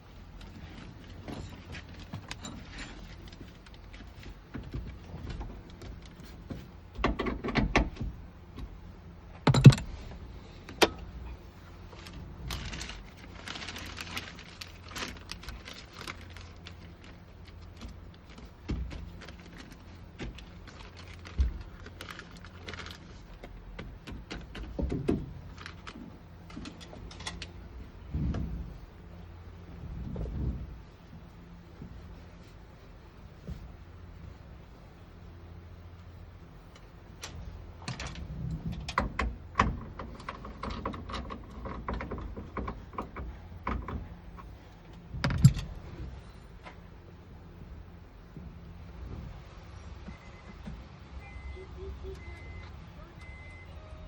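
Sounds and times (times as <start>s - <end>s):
clicks and rattles of car door parts: 1.2s - 11.1s, 17.6s - 27.6s, 37.2s - 45.8s.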